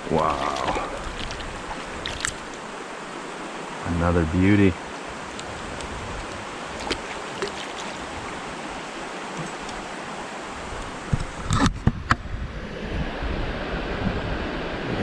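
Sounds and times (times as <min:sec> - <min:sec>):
creek water rushing: 0:00.0 - 0:11.6.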